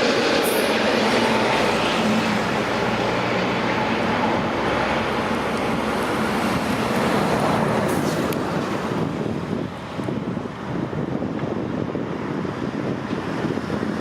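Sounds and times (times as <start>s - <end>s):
jet engines rushing: 0.0s - 14.0s.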